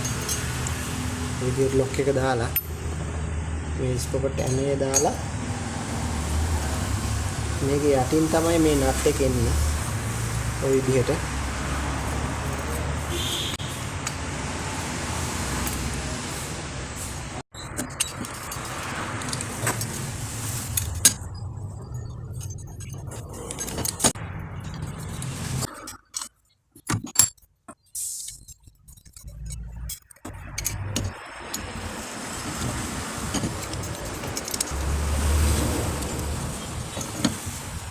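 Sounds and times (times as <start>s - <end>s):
small metal parts clinking: 0.0s - 0.8s, 17.6s - 20.0s, 20.7s - 32.6s, 33.2s - 34.8s.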